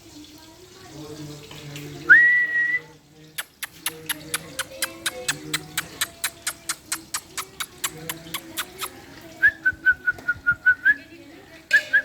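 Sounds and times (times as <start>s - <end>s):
parrot clicking: 3.4s - 8.9s.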